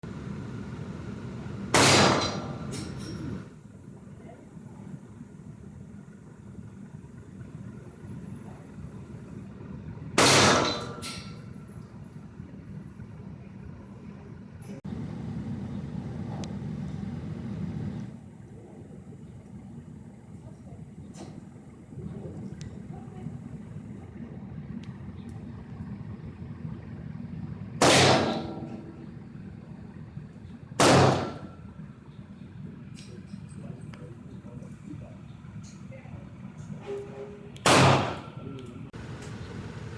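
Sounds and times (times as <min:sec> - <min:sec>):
revolver gunshot: 0:01.7 - 0:02.6, 0:10.2 - 0:11.1, 0:27.8 - 0:28.8, 0:30.8 - 0:31.5, 0:37.6 - 0:38.3.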